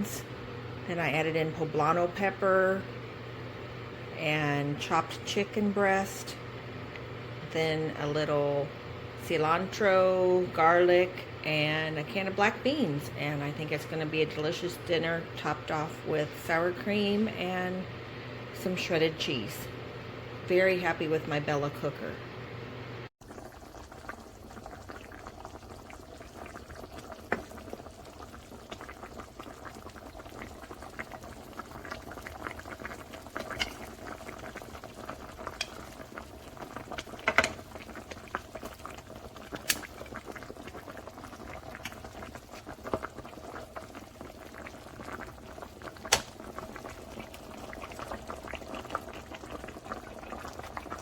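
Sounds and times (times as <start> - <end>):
food simmering and popping: 23.2 - 51.0.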